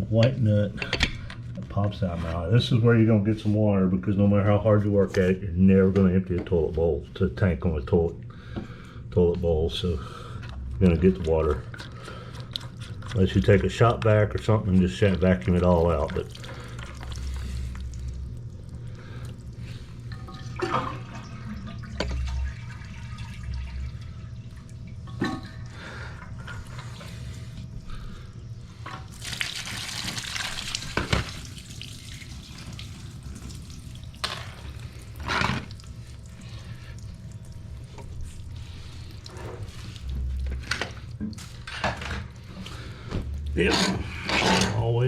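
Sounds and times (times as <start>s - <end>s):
water running and dripping: 10.8s - 27.9s, 29.0s - 41.7s.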